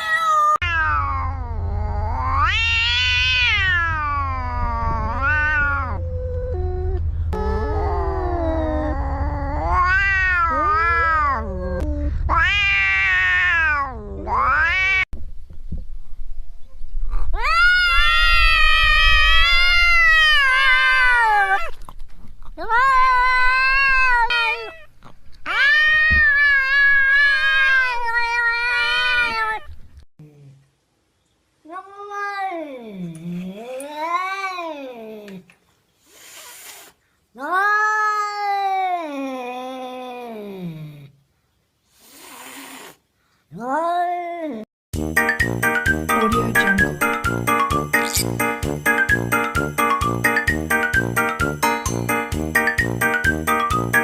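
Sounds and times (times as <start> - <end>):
cat yowling: 0.0 - 6.3, 7.5 - 15.1.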